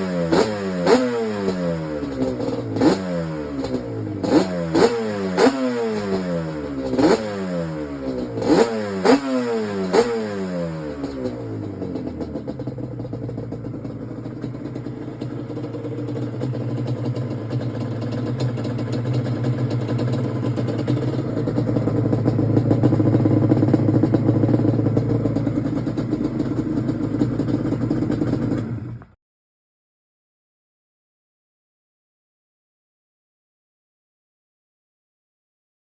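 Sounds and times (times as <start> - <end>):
two-stroke engine revving: 0.0 - 14.0, 14.6 - 29.2.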